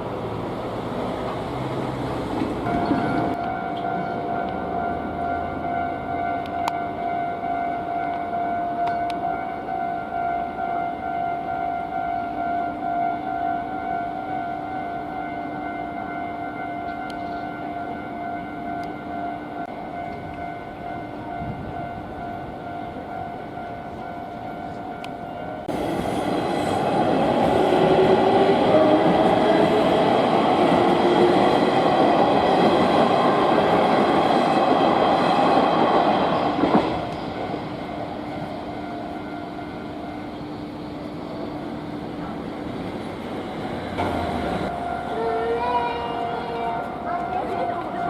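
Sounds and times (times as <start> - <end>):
electric train passing: 0.0 - 48.0.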